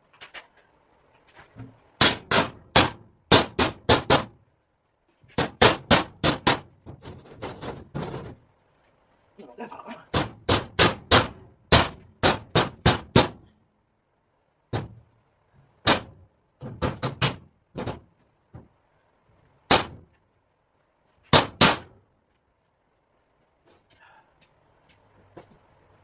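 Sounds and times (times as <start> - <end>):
sharp knocks on metal: 1.6 - 4.4, 5.3 - 8.4, 10.1 - 13.5, 14.7 - 15.0, 15.8 - 18.7, 19.7 - 20.2, 21.3 - 22.0.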